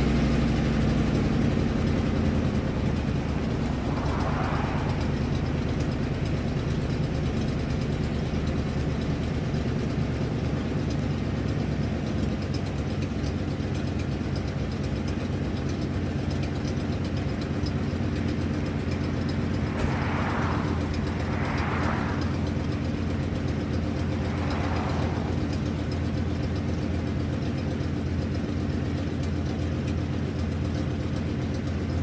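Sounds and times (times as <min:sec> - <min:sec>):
engine idling: 0:00.0 - 0:32.0
exhaust leak ticking: 0:00.0 - 0:32.0
short hissing: 0:19.1 - 0:26.1.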